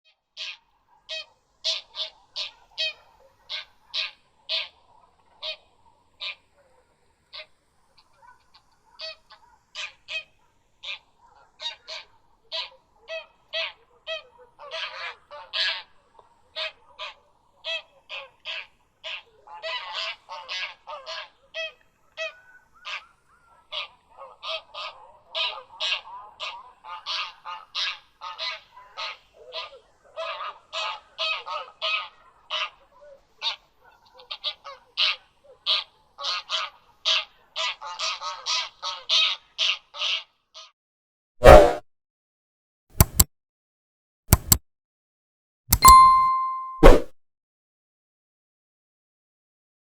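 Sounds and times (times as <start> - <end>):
flock calling softly: 45.7 - 46.9.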